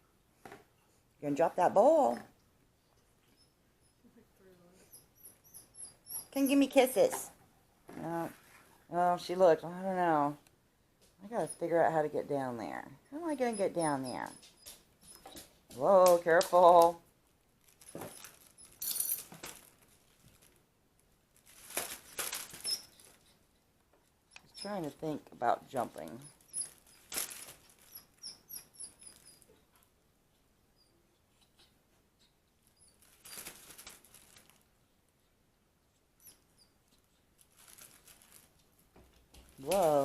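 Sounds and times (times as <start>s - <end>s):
monkey high squeaks: 4.9s - 6.4s, 22.6s - 23.1s, 27.9s - 29.5s.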